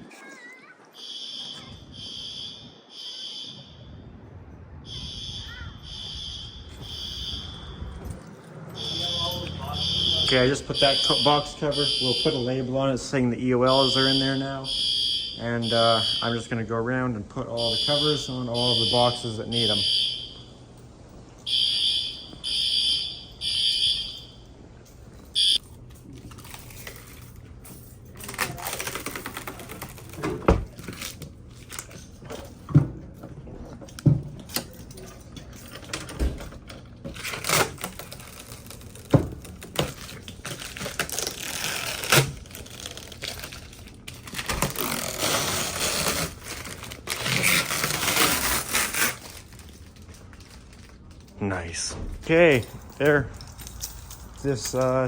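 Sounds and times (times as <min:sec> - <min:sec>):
fire alarm horn pulses: 0:01.0 - 0:04.2, 0:04.8 - 0:08.0, 0:08.7 - 0:12.9, 0:13.7 - 0:16.6, 0:17.5 - 0:20.7, 0:21.4 - 0:24.6, 0:25.3 - 0:25.6.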